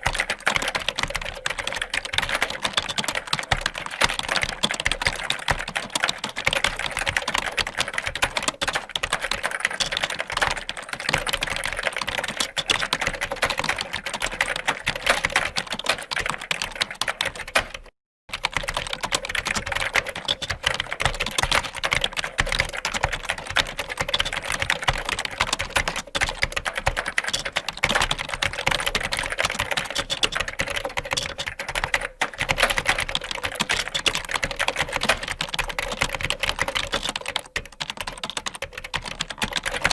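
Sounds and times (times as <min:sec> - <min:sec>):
fast typing on keyboard: 0:00.0 - 0:39.9.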